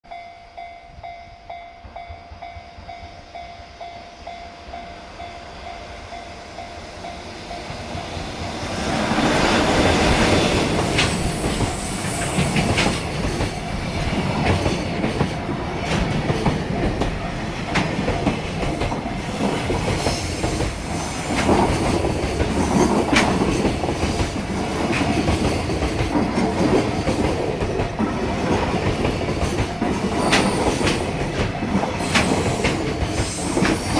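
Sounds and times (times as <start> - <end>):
train wheels clattering over rail joints: 7.8 - 33.9.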